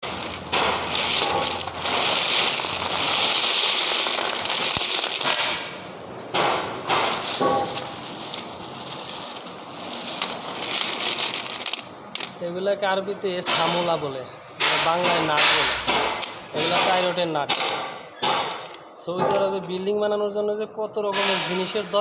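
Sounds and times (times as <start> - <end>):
metal nuts clinking and rattling: 0.0 - 6.0, 6.8 - 8.7, 9.9 - 12.5, 16.2 - 16.6, 17.5 - 19.6
sharp metal knocks: 0.4 - 1.8, 5.2 - 7.8, 14.6 - 19.6, 21.1 - 21.8.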